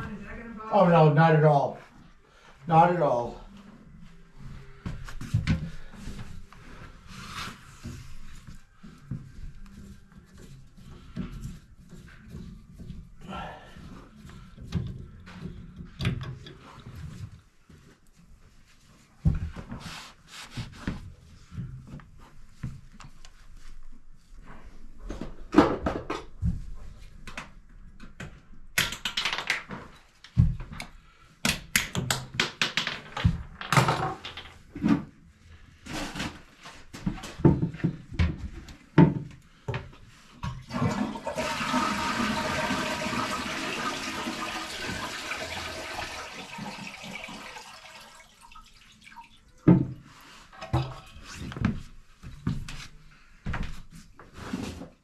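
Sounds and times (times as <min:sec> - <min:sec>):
toilet flushing: 0:40.5 - 0:49.6.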